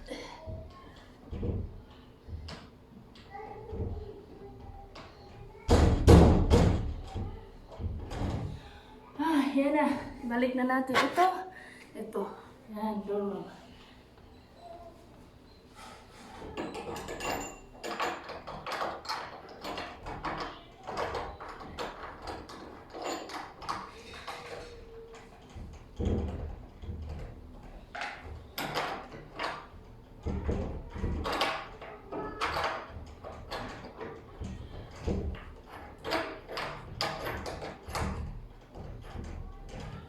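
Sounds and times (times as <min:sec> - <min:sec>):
knocks against door: 0:05.7 - 0:08.6
doorknob metallic clicks and rattles: 0:16.5 - 0:40.0.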